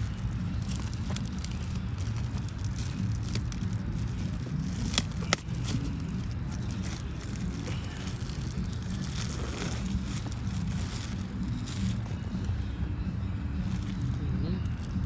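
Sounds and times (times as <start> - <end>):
packaging crackling and scraping: 0.0 - 12.7, 13.6 - 15.0
steady low rumble: 0.0 - 15.0.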